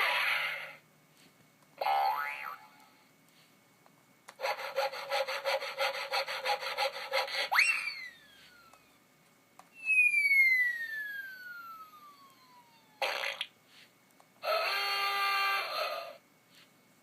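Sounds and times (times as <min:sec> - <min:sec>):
long falling whistle: 0:07.6 - 0:08.8, 0:09.8 - 0:13.0.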